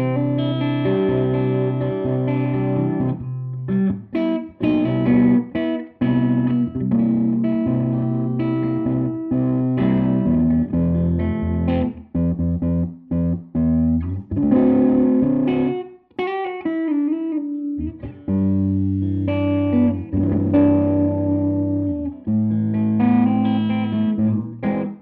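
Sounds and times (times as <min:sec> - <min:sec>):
electric guitar chords and riffs: 0:00.0 - 0:25.0
sliding guitar notes: 0:00.0 - 0:25.0.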